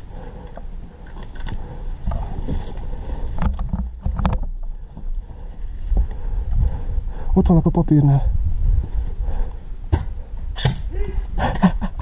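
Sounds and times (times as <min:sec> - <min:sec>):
low rumbling wind: 0:00.0 - 0:12.0
microphone handling noise: 0:03.3 - 0:04.7.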